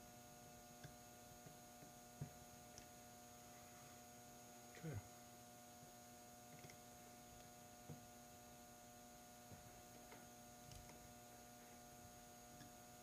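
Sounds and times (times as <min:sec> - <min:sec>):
steady electrical hum: 0:00.0 - 0:13.0
faint clicks of small parts: 0:09.9 - 0:11.0.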